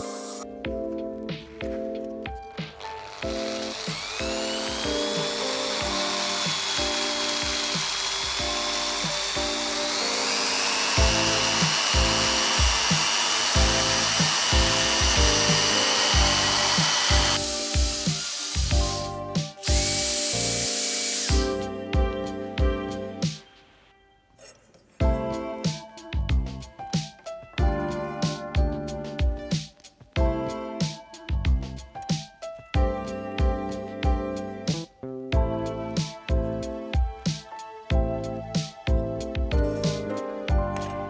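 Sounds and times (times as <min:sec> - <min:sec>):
background music with beat: 0:00.0 - 0:24.1, 0:25.0 - 0:41.0
power tool whining: 0:02.7 - 0:21.7.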